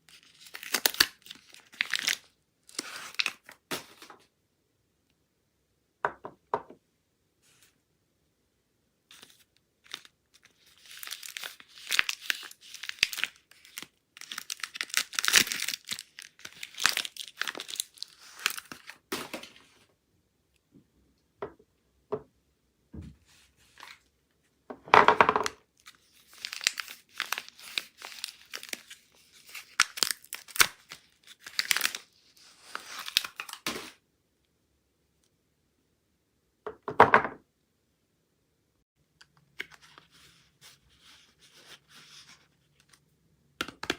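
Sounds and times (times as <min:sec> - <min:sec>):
wrapping crinkling and rustling: 0:00.1 - 0:04.2, 0:09.1 - 0:19.9, 0:25.8 - 0:34.0.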